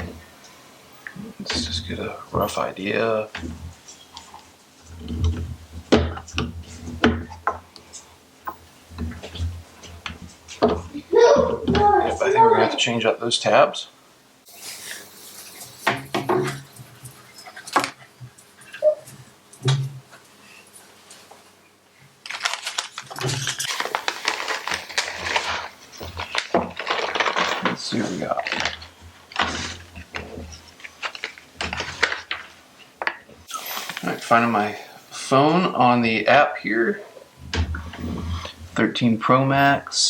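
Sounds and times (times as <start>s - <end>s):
plastic clicks and rustling: 22.2s - 33.2s.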